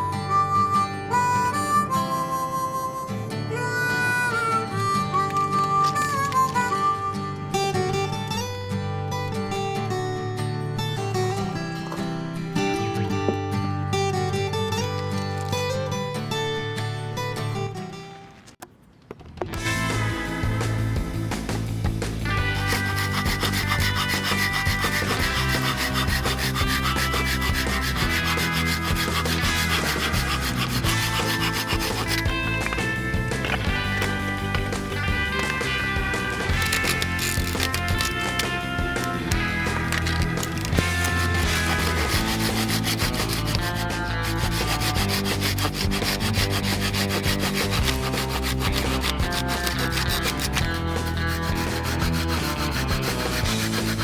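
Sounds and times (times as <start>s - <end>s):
rhythmic scraping on wood: 3.6s - 7.0s, 19.2s - 54.0s.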